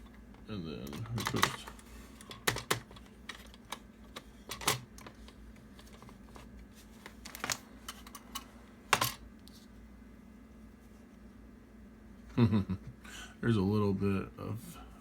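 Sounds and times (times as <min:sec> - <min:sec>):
plastic clicks and clacks: 0:00.8 - 0:06.5.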